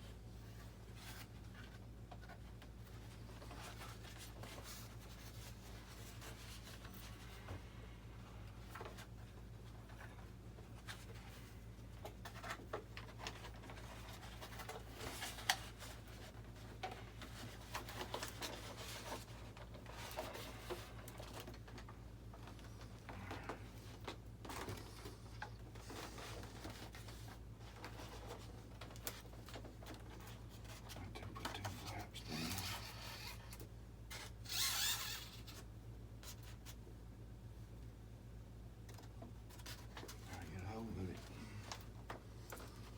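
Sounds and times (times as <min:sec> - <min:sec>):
steady low hum: 0:00.0 - 0:34.6, 0:35.2 - 0:42.9
scraping rustle: 0:22.5 - 0:35.6.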